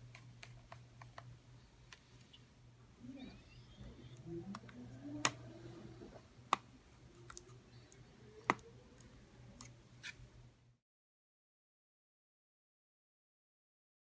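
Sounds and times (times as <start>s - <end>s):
low steady hum: 0.0s - 10.8s
faint rising whines: 2.5s - 9.6s.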